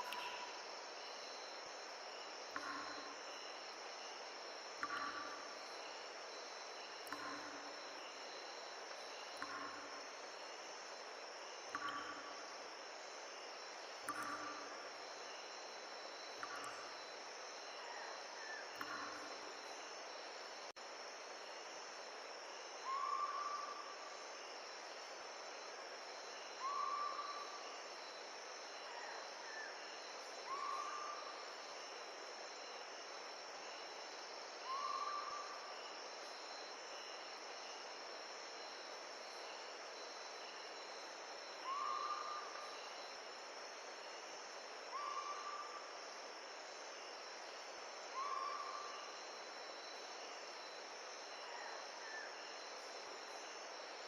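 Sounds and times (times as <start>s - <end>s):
insect chorus: 0.0s - 54.0s
soft hiss: 0.0s - 54.0s.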